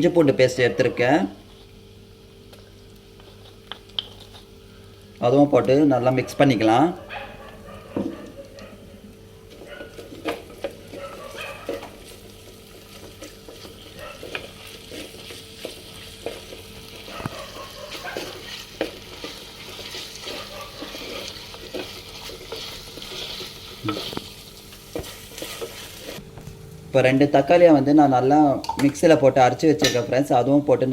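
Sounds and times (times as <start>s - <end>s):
food sizzling in hot oil: 1.4s - 28.7s
spoon scraping clay pot: 3.2s - 4.5s, 13.0s - 26.2s.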